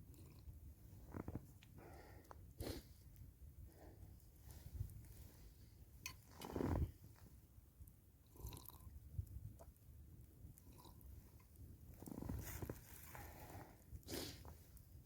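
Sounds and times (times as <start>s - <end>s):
person chewing food: 8.4s - 8.9s.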